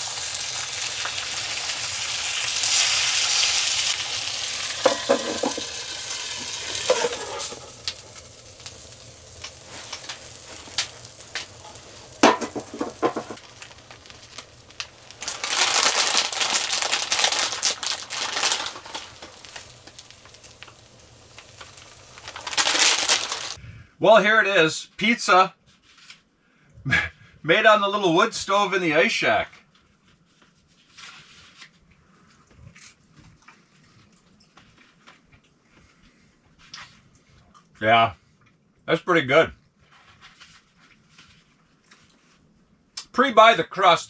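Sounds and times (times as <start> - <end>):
pizza sizzling in a pan: 0.0 - 23.6
metal pans clicking and scraping: 3.9 - 20.8.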